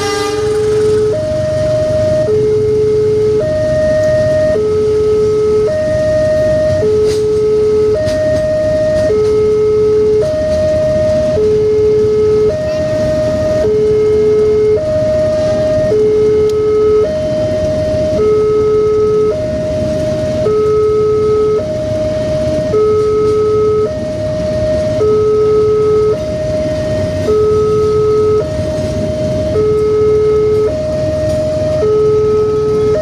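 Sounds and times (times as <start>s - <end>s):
train rumbling past: 0.0s - 4.6s, 19.3s - 33.0s
two-tone level crossing alarm: 0.0s - 33.0s.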